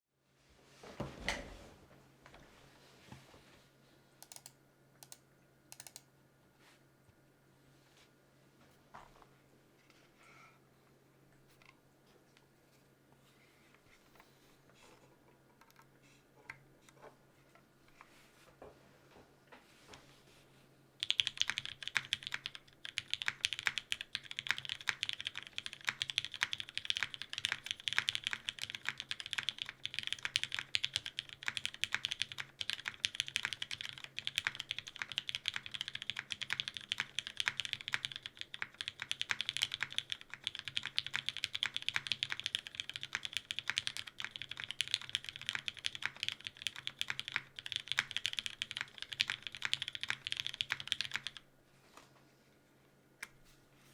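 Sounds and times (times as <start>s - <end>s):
fast mechanical keyboard typing: 4.2s - 6.0s, 21.0s - 51.4s.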